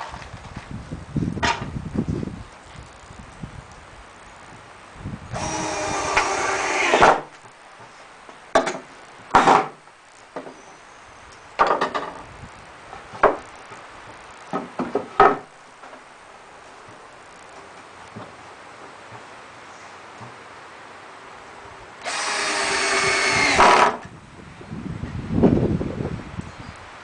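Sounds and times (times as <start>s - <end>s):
power drill driving screws into wood: 5.4s - 7.3s, 22.0s - 24.1s.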